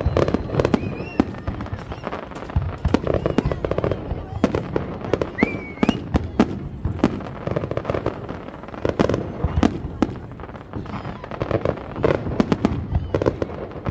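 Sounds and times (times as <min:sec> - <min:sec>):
rising firework whistle: 0:00.0 - 0:09.8
fireworks bangs: 0:00.0 - 0:13.9
fireworks crackling: 0:00.0 - 0:13.9.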